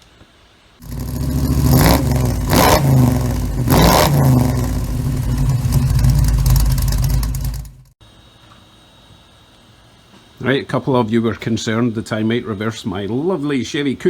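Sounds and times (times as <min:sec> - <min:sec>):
car engine revving: 0:00.8 - 0:08.0.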